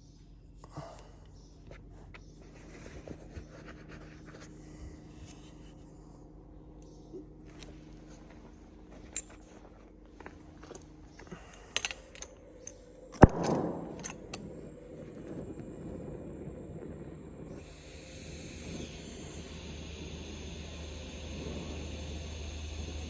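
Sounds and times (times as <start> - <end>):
metal tools clinking: 7.5 - 14.5
steady hiss: 13.2 - 23.0.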